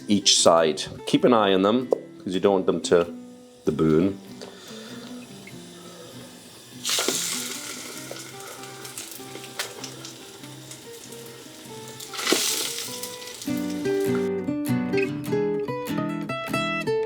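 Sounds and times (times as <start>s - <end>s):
batter sizzling in a pan: 3.4s - 14.3s.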